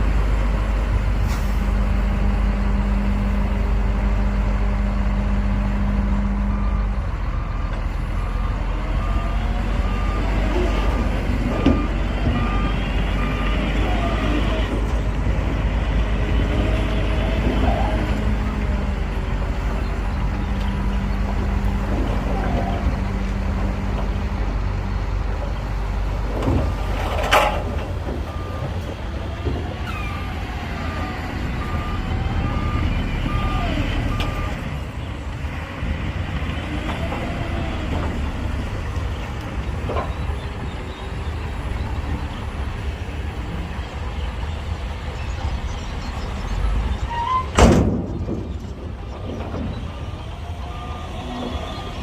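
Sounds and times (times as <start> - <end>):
diesel machinery engine rumble: 0.0 - 52.0
reversing alarm beeping: 30.0 - 34.6.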